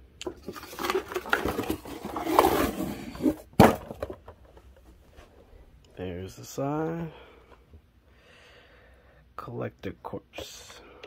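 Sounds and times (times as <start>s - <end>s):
cardboard box rustling and crinkling: 0.2s - 4.2s.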